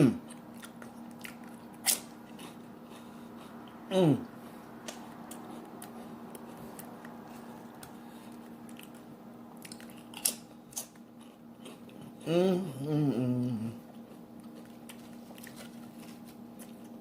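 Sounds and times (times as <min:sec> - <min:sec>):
person humming mmm: 0:00.0 - 0:00.3, 0:03.9 - 0:04.4, 0:12.0 - 0:13.9
crunching bites and chewing: 0:00.2 - 0:03.8, 0:04.7 - 0:12.2, 0:13.9 - 0:17.0.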